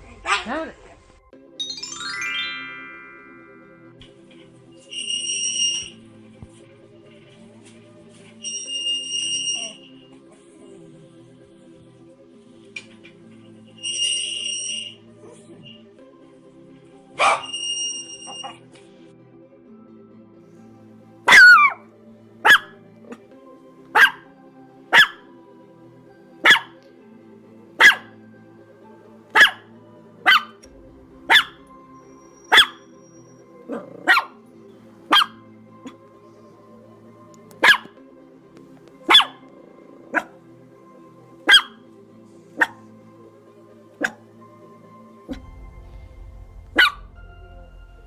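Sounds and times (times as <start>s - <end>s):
dog barking: 0.0s - 0.5s, 17.2s - 17.5s, 21.3s - 21.8s, 22.4s - 23.2s, 23.9s - 24.3s, 24.9s - 25.3s, 26.4s - 26.8s, 27.8s - 28.2s, 29.3s - 30.6s, 31.3s - 31.7s, 32.5s - 32.9s, 33.6s - 34.4s, 35.1s - 35.4s, 37.6s - 38.0s, 39.0s - 40.4s, 41.4s - 41.8s, 42.6s - 42.9s, 44.0s - 44.2s, 46.8s - 47.0s
soft background music: 0.0s - 48.0s.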